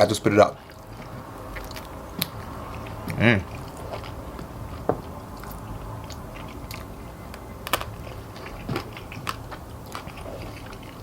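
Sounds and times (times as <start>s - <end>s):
bones crunched between teeth: 5.4s - 11.0s.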